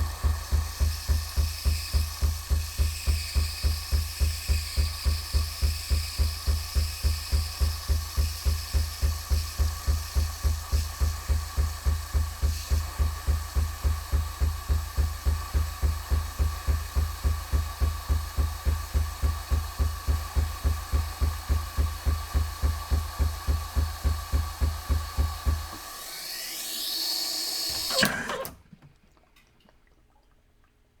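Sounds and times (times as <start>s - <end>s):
coffee machine pump pulsing: 0.0s - 28.6s
motor whine rising: 24.0s - 28.5s
machine clunk: 27.8s - 28.6s.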